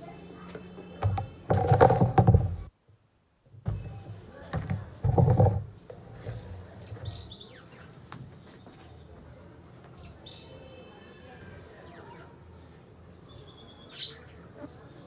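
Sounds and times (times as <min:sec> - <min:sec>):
rustling thump: 0:01.0 - 0:02.7
small birds chirping: 0:06.6 - 0:15.0.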